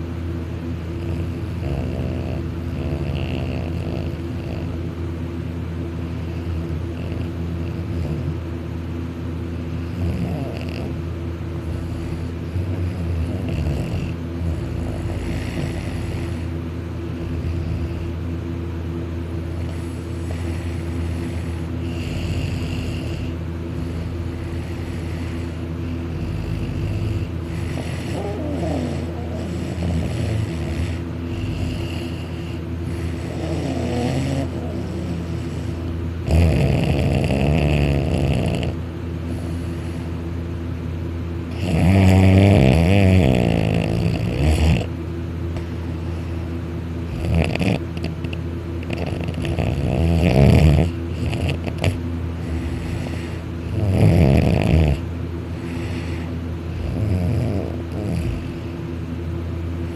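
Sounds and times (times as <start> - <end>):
steady low hum: 0.0 - 59.9
man snoring: 1.0 - 4.8, 6.2 - 8.4, 9.8 - 11.0, 11.6 - 16.5, 17.2 - 18.2, 19.6 - 38.8, 41.5 - 44.9, 47.1 - 58.7.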